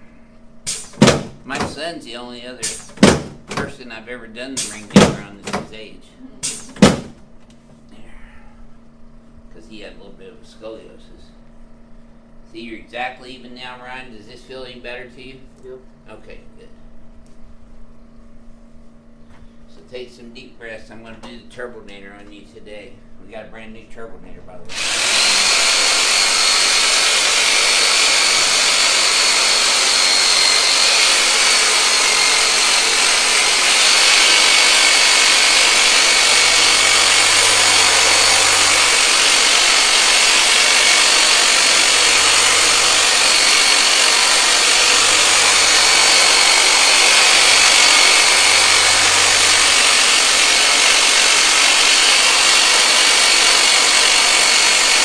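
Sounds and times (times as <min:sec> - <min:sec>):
motor whirring with high whine: 0:24.7 - 0:55.0.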